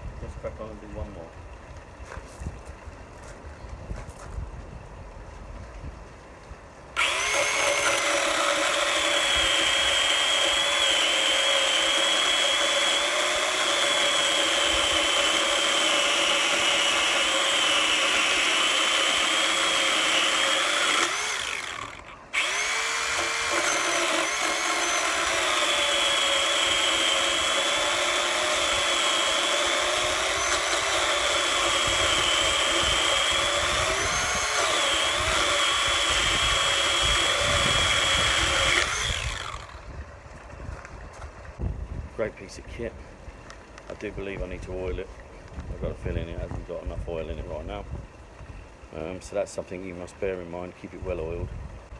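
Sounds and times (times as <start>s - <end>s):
pole saw chain cutting timber: 7.0s - 39.9s.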